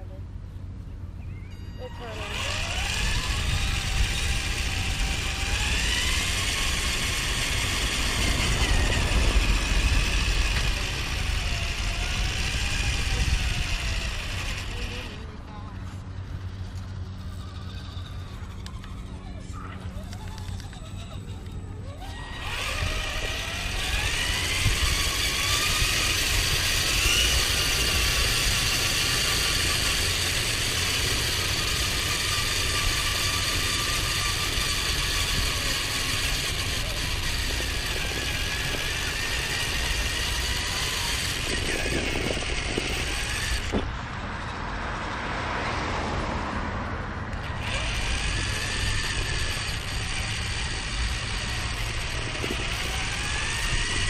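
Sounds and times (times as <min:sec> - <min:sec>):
toy car electric motor whining: 0:01.3 - 0:15.4, 0:16.2 - 0:43.9, 0:47.3 - 0:54.0.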